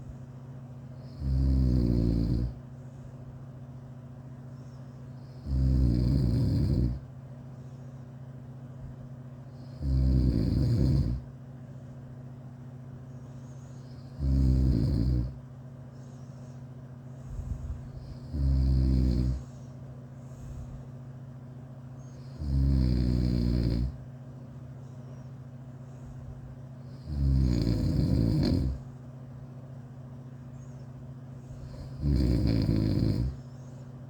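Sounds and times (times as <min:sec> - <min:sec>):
person snoring: 0:01.0 - 0:02.6, 0:05.2 - 0:07.0, 0:09.6 - 0:11.2, 0:13.9 - 0:15.4, 0:17.4 - 0:19.6, 0:22.2 - 0:24.0, 0:26.9 - 0:28.8, 0:31.6 - 0:33.4.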